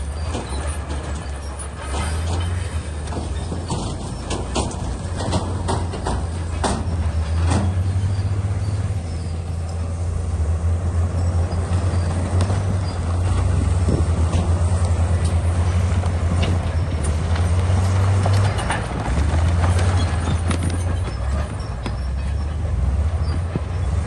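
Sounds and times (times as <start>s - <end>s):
bulldozer diesel engine running: 0.0s - 24.0s
sharp knocks: 3.1s - 7.8s.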